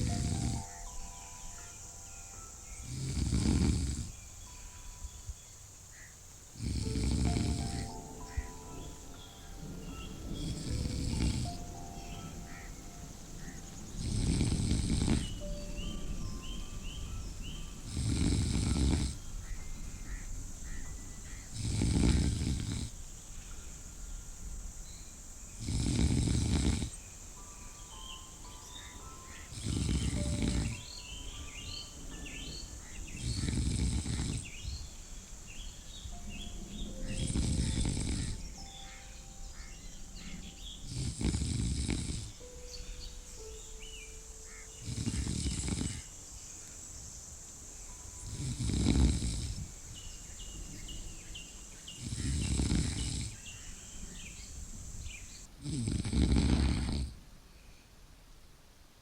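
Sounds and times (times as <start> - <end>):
slow regular snoring: 0.0 - 0.9, 2.6 - 4.7, 6.6 - 12.7, 13.4 - 15.6, 17.5 - 19.6, 21.2 - 23.1, 25.5 - 27.1, 28.0 - 34.8, 36.7 - 43.0, 44.8 - 46.2, 48.2 - 49.8, 51.9 - 53.5, 54.2 - 57.2
steady hiss: 0.0 - 59.0.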